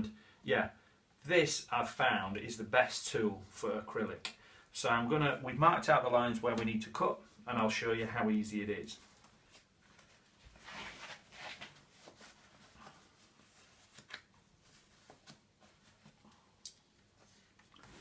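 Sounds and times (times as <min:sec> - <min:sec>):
soft rustles: 0:08.9 - 0:18.0.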